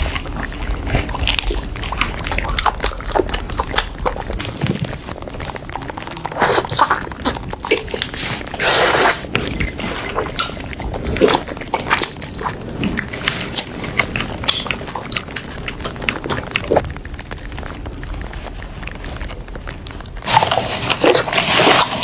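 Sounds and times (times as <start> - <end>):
wet chewing and mouth clicks: 0.0 - 22.0
loud slurp: 5.8 - 14.1, 20.0 - 22.0.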